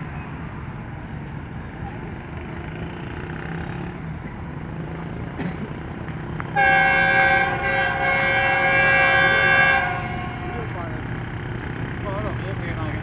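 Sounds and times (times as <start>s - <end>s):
low train rumble: 0.0s - 13.0s
locomotive horn blast: 6.5s - 11.0s.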